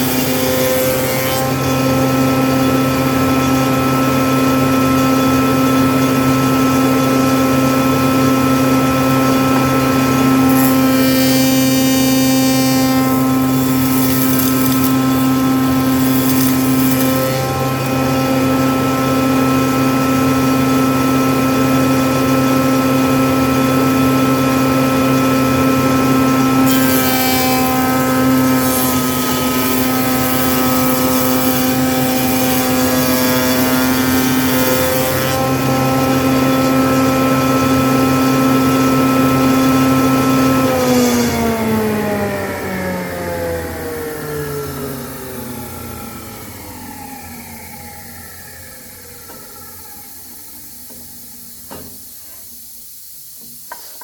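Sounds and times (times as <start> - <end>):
rasp of cutting wood: 0.0 - 2.7, 9.7 - 18.8, 26.6 - 42.1
power tool motor running: 0.0 - 51.7.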